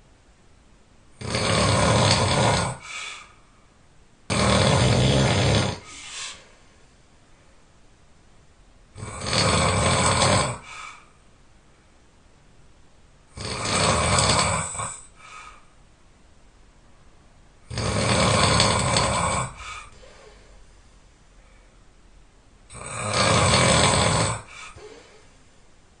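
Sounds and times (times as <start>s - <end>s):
person snoring loudly: 1.2s - 3.0s, 4.3s - 6.0s, 9.0s - 10.8s, 13.3s - 15.1s, 17.7s - 19.9s, 22.7s - 24.9s
faint breath: 2.8s - 3.8s, 5.8s - 7.7s, 10.6s - 12.0s, 14.9s - 15.8s, 19.5s - 21.9s, 24.4s - 25.6s.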